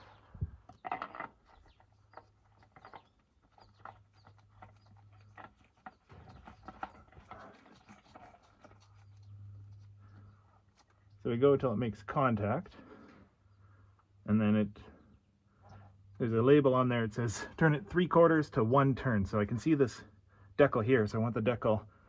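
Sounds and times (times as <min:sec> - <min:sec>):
oil filter clicks and scrapes: 0:00.6 - 0:11.2
low hum: 0:06.1 - 0:12.4.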